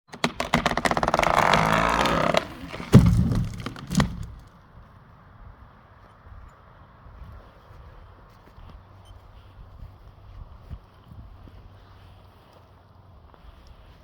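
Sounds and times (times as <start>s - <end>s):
heavy thuds: 0.2s - 4.5s.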